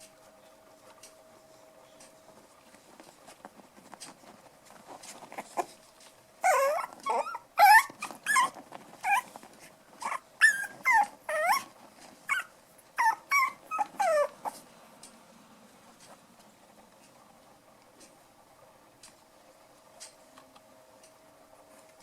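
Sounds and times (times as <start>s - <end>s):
puppies yelping and whimpering: 6.4s - 9.4s, 10.0s - 11.7s, 12.3s - 14.6s.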